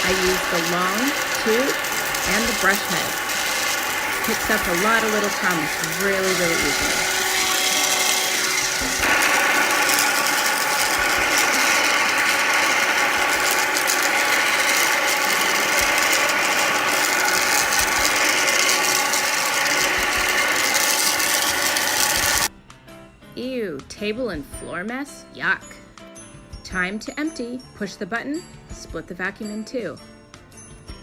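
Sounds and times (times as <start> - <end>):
crumbs rattling up vacuum tube: 0.0 - 22.5
handheld vacuum motor whine: 0.0 - 22.5.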